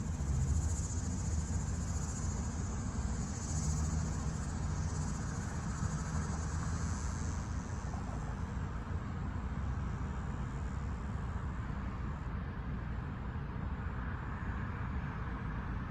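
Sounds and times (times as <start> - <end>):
insects chirring: 0.0 - 8.4.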